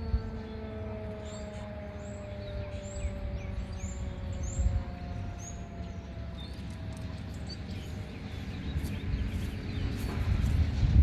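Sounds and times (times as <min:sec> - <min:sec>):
distant warning siren: 0:00.0 - 0:10.6
birds chirping: 0:07.3 - 0:10.6.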